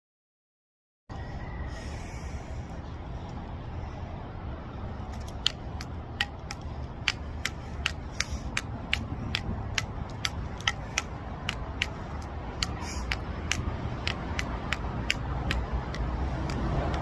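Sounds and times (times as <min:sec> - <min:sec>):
devil stick clicks: 0:05.0 - 0:17.0.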